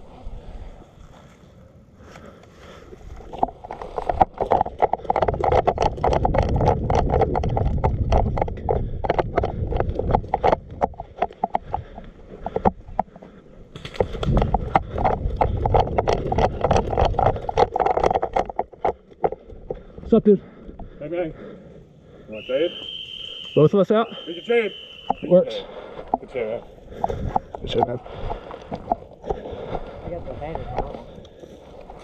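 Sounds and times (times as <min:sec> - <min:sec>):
running footsteps: 0:02.7 - 0:21.4, 0:24.2 - 0:32.0
gear jolting and rattling: 0:03.5 - 0:12.5, 0:13.8 - 0:19.8.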